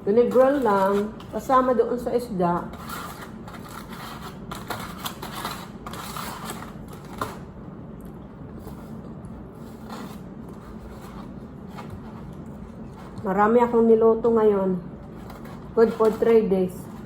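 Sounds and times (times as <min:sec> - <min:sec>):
food crackling and chewing: 0:03.0 - 0:13.3.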